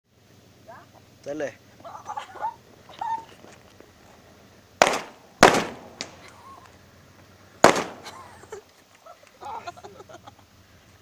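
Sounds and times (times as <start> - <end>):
loud bangs in bonfire: 4.8 - 6.3, 7.6 - 8.3.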